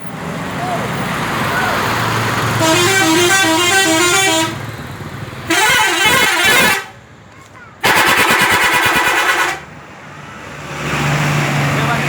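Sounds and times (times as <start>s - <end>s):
bus engine running: 0.0s - 12.0s
multi-tone bus horn melody: 2.5s - 4.7s, 5.4s - 7.0s, 7.8s - 9.8s.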